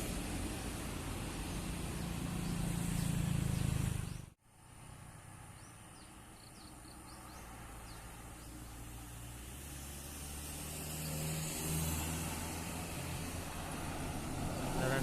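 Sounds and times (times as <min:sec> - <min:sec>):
bus engine rumbling: 0:00.0 - 0:04.3, 0:12.0 - 0:15.0
distant traffic rumble: 0:00.0 - 0:15.0
birds chirping: 0:01.3 - 0:04.4, 0:05.5 - 0:10.1.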